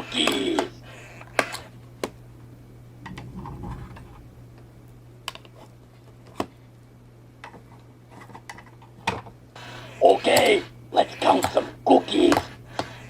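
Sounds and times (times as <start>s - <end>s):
steady low hum: 0.0s - 5.7s, 9.6s - 13.0s.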